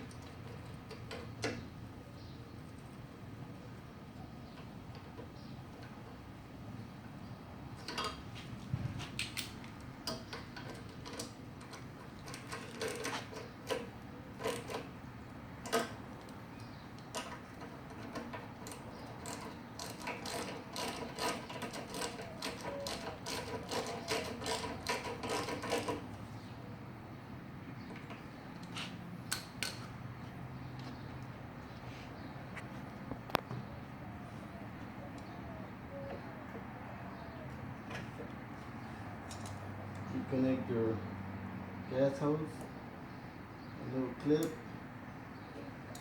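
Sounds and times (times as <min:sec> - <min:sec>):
hand tools clicking on metal: 0:09.2 - 0:14.9, 0:15.6 - 0:26.1.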